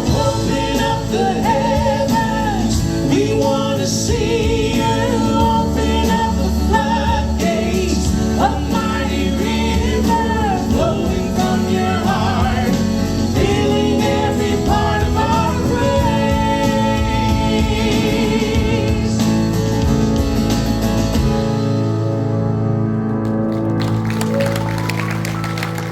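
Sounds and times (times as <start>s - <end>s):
voices singing: 0.0s - 19.4s
band playing: 0.0s - 25.9s.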